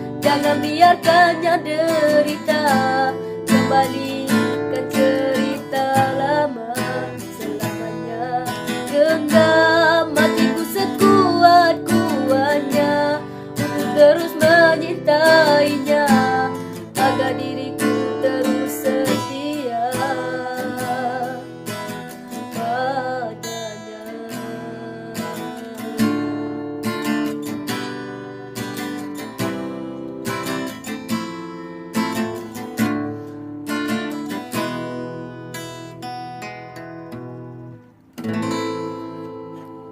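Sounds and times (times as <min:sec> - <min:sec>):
person singing with wavering notes: 0:00.0 - 0:27.6
acoustic guitar strummed and plucked: 0:00.0 - 0:39.9.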